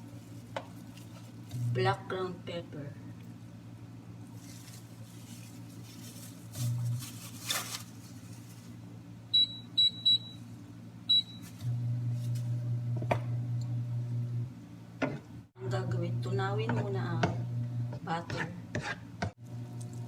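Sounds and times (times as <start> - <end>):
loud low appliance hum: 0.0 - 20.0
short electronic beeps: 9.4 - 10.4, 11.1 - 11.4.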